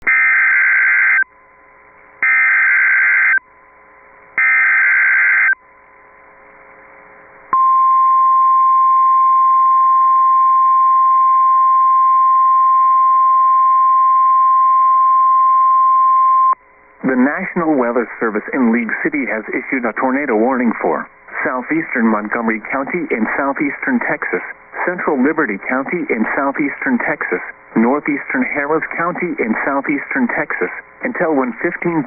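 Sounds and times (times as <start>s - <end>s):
steady alarm tone: 0.1s - 1.6s, 2.2s - 3.6s, 4.3s - 5.6s
screeching digital data tones: 2.2s - 3.4s, 4.4s - 5.6s
faint radio hiss: 16.6s - 32.0s.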